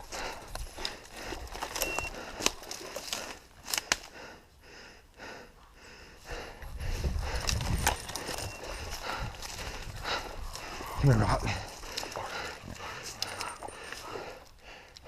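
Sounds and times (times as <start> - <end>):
twigs snapping: 0.0 - 4.2, 7.2 - 10.9, 11.6 - 15.0.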